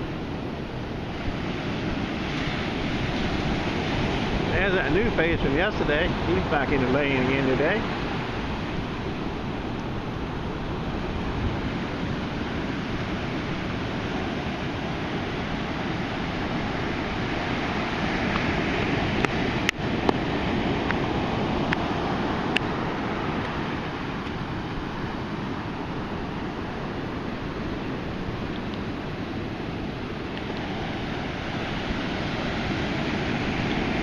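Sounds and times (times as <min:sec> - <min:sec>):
ocean surf breaking: 0:00.0 - 0:34.0.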